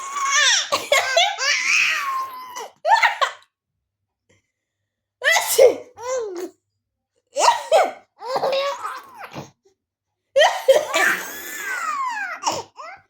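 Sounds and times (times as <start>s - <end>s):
woman sneezing: 5.3s - 5.9s.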